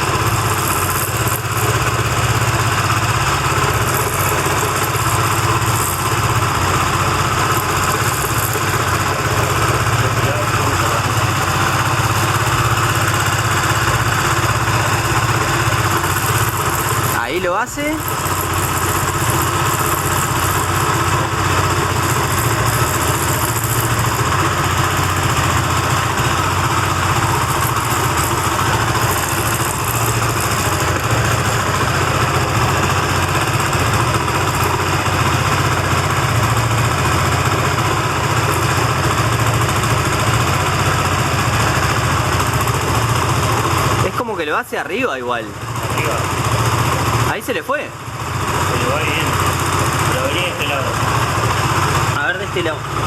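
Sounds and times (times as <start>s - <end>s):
buzzing internal engine noise: 0.0s - 53.0s
motorcycle engine idling: 0.0s - 53.0s.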